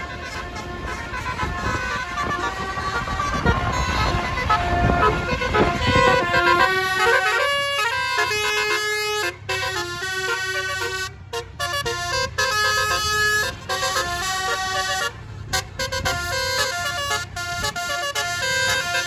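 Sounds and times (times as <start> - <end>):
bus horn playing a melody: 0.0 - 19.0.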